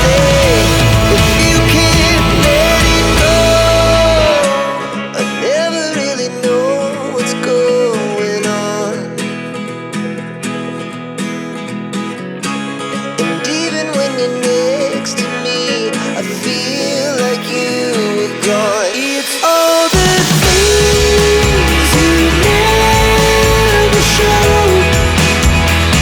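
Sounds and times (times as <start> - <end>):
song with guitar and beat: 0.0 - 26.0.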